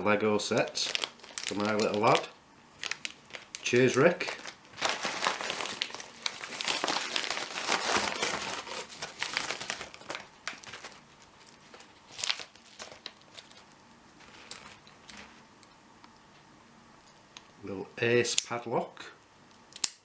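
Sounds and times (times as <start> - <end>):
packaging crinkling and rustling: 0.5 - 15.5.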